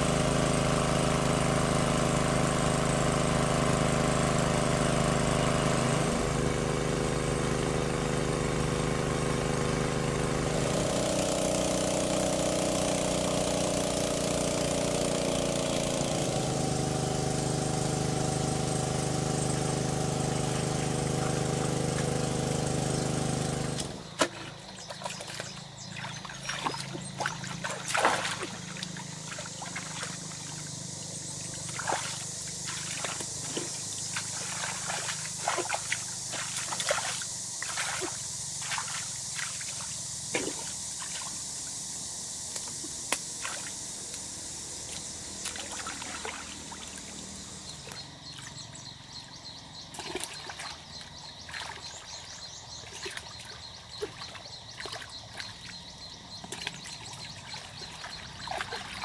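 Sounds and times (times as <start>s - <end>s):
splashes in shallow water: 23.6s - 41.6s, 42.5s - 44.1s, 44.8s - 59.0s.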